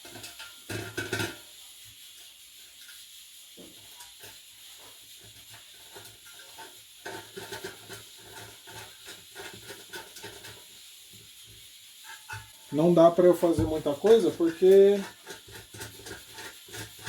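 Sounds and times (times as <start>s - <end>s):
small parts clicking and scraping: 0.0s - 17.0s
steady hiss: 0.0s - 17.0s.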